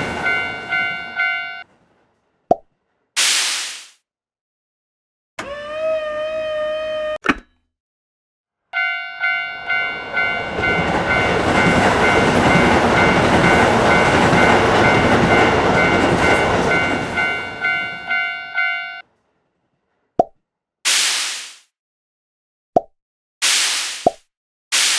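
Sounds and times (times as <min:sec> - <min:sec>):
railroad crossing bell ringing: 0:00.0 - 0:01.7, 0:08.8 - 0:19.0
passing train rumble: 0:00.0 - 0:03.1, 0:08.8 - 0:20.0.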